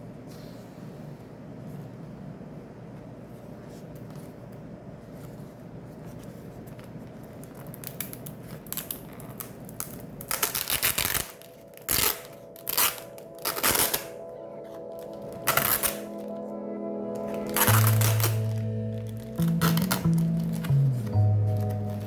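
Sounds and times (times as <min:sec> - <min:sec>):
low background hum: 0:00.0 - 0:22.0
food packaging tearing and crinkling: 0:07.2 - 0:14.2.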